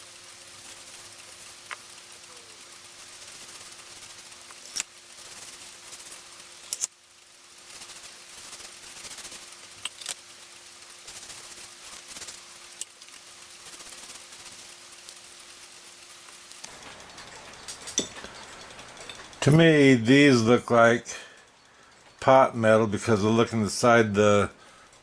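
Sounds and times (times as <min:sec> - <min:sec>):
scraping hiss on metal parts: 0:00.0 - 0:20.5, 0:21.1 - 0:22.3
metal parts clicking and tapping: 0:06.6 - 0:07.0, 0:16.6 - 0:19.7.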